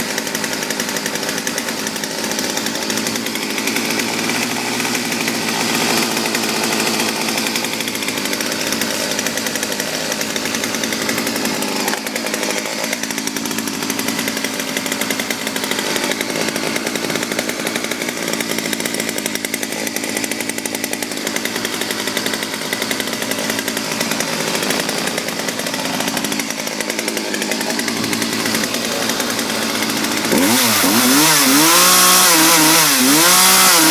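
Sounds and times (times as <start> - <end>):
two-stroke chainsaw running: 0.0 - 33.9.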